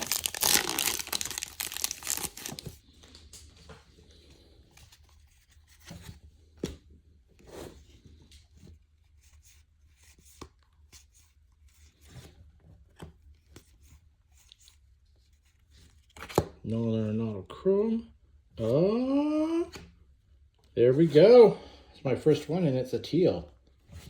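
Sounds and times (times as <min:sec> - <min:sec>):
wrapper tearing and crinkling: 0:00.0 - 0:02.8
cards being handled: 0:00.0 - 0:03.8.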